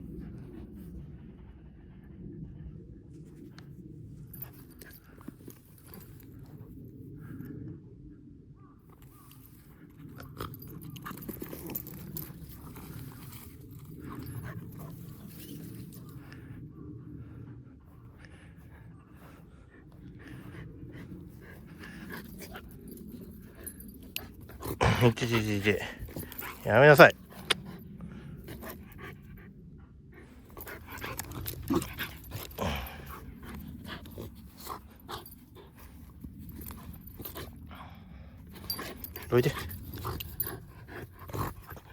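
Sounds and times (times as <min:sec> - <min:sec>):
light clicks and crunches: 0:08.9 - 0:16.2, 0:20.0 - 0:27.8, 0:30.4 - 0:37.7, 0:38.4 - 0:41.9
dog panting: 0:10.2 - 0:16.5, 0:17.1 - 0:41.9.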